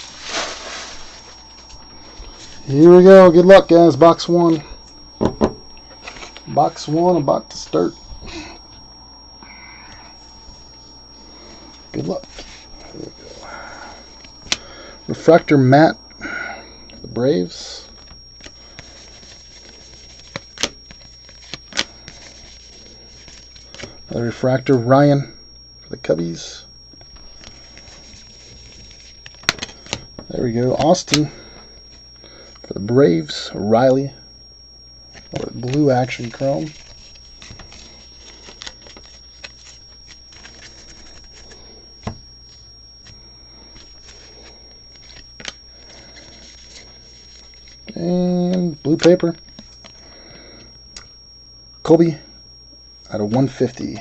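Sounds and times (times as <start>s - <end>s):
cards sliding and rustling: 0.0s - 1.6s, 6.0s - 7.0s, 12.2s - 13.4s, 18.0s - 23.9s, 35.2s - 43.2s
trading cards rustling: 0.0s - 5.2s, 5.8s - 8.4s, 17.9s - 24.0s, 27.1s - 31.3s, 35.2s - 50.0s.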